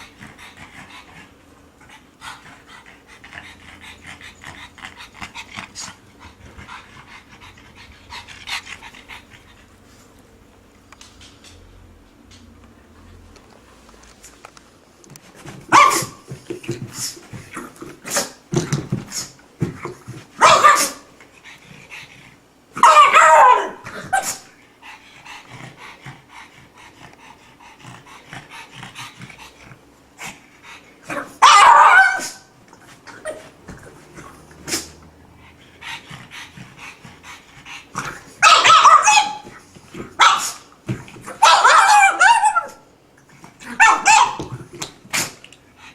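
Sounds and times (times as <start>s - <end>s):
dog barking: 15.7s - 16.2s, 20.4s - 21.1s, 22.8s - 24.4s, 31.1s - 32.5s, 38.4s - 39.4s, 40.2s - 40.6s, 41.4s - 42.8s, 43.8s - 44.5s.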